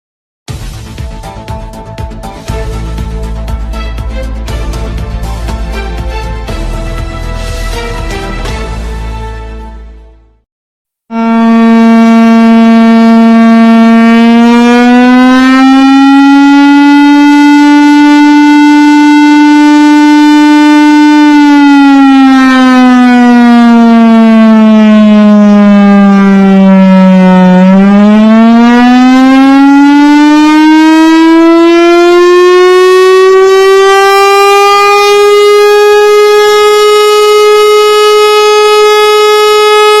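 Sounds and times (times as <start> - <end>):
air raid siren: 11.1 - 40.0.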